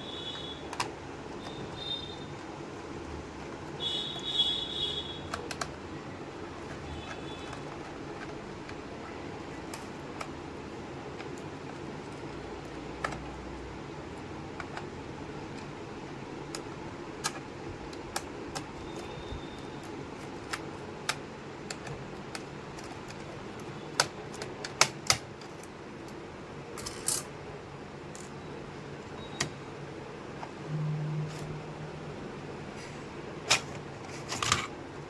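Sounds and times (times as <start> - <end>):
small hard parts clicking: 0.1 - 10.4
steady low hum: 25.3 - 35.0.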